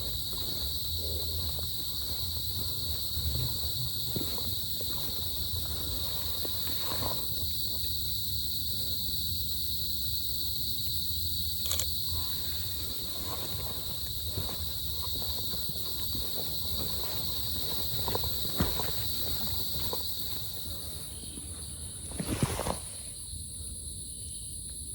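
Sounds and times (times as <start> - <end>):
small rustles and ticks: 0.0 - 9.0, 11.6 - 22.7
insect chorus drone: 0.0 - 24.9.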